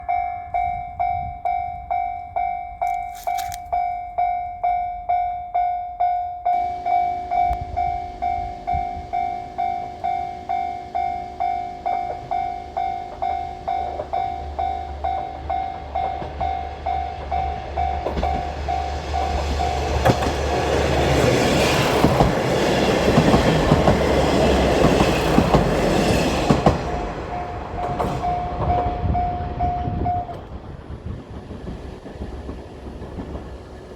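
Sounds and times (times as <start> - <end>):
railroad crossing bell ringing: 0.0 - 30.5
diesel railcar rumble: 6.4 - 33.9.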